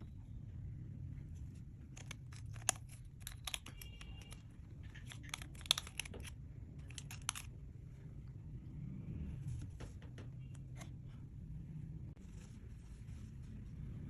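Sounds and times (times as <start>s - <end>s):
low steady hum: 0.0s - 14.0s
slime clicking and crackling: 1.9s - 7.5s.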